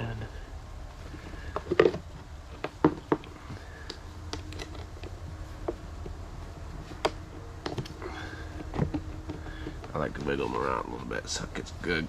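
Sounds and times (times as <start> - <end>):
clamps scraping on terminals: 3.7 - 5.2.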